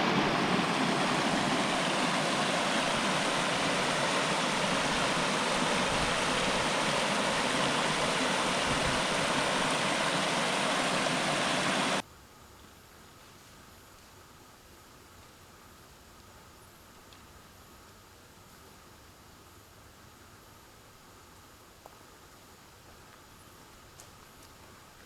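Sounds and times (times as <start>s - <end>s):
steady rushing noise: 0.0s - 12.0s.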